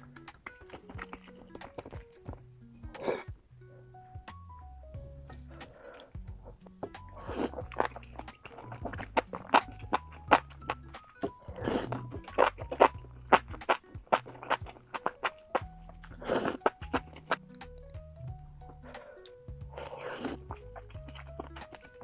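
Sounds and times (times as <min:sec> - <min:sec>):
crunchy bites and chewing: 0:00.0 - 0:02.4, 0:05.9 - 0:18.0, 0:19.7 - 0:22.0
soft background music: 0:00.0 - 0:22.0.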